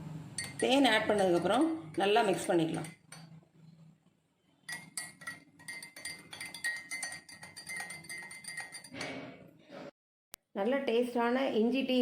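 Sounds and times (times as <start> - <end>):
spoon clinking against glass: 0.4 - 3.4, 4.6 - 9.2.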